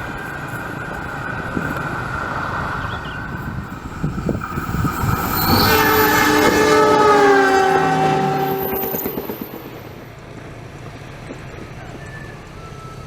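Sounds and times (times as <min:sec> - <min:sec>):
train running by: 0:00.0 - 0:13.0
locomotive horn chord: 0:04.6 - 0:09.8.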